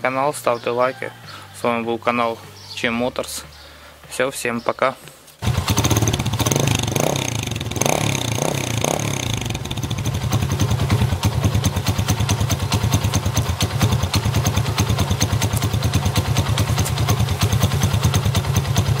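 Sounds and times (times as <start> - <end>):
moped engine idling: 5.4 - 19.0.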